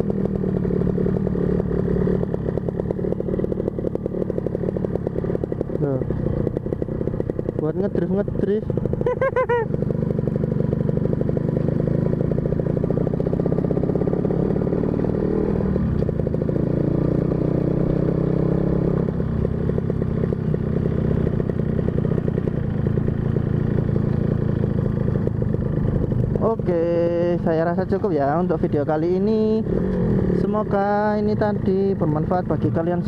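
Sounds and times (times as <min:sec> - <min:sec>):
motorcycle engine running: 0:00.0 - 0:33.0.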